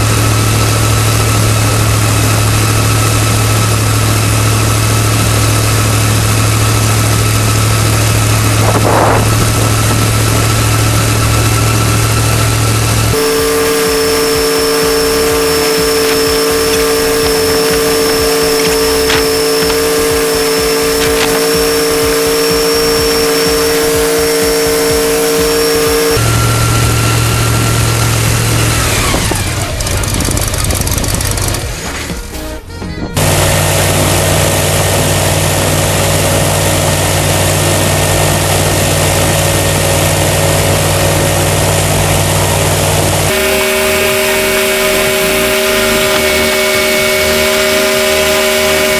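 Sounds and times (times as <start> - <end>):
wind machine humming with whine: 0.0 - 32.2, 33.0 - 48.9
higher steady tone: 13.1 - 27.2, 43.3 - 48.9.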